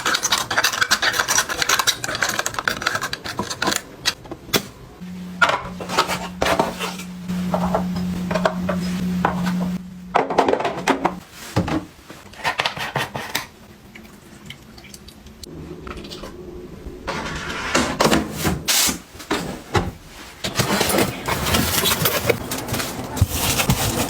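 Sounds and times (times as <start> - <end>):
steady low hum: 4.2 - 11.3.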